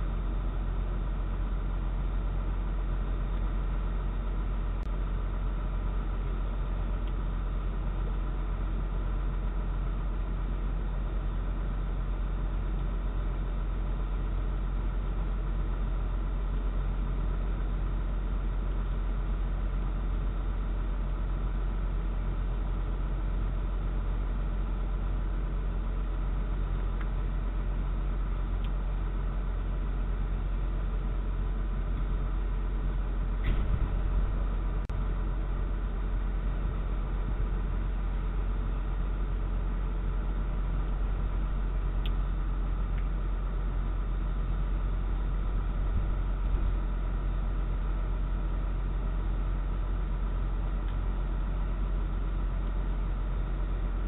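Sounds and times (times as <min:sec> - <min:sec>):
faint hum: 0:00.0 - 0:54.0
low rumble: 0:21.5 - 0:54.0.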